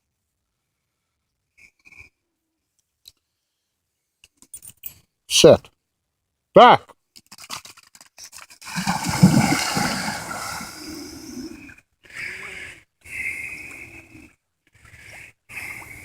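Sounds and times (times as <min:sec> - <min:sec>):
dog splashing into water: 0:08.6 - 0:11.6
short rushes of noise: 0:08.7 - 0:11.6.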